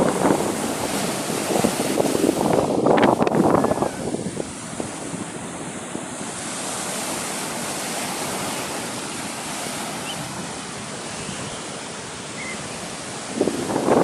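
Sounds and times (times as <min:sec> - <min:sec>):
waves washing onto shore: 0:00.0 - 0:14.0.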